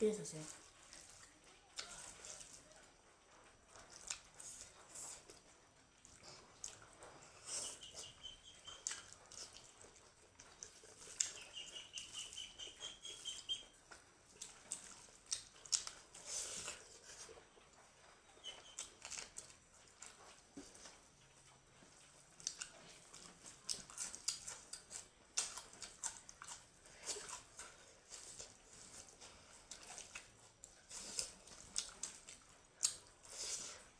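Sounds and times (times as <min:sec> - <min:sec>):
wet chewing and lip smacks: 0:00.5 - 0:33.9.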